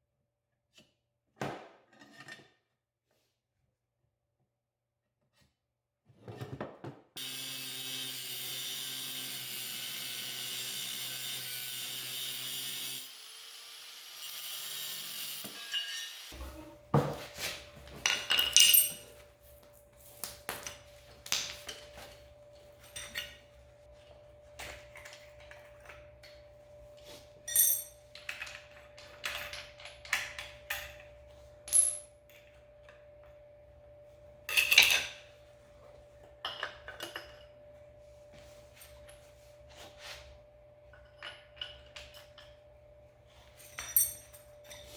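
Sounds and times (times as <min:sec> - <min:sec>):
metallic clanks and clinks: 0:18.0 - 0:19.2, 0:43.6 - 0:44.9.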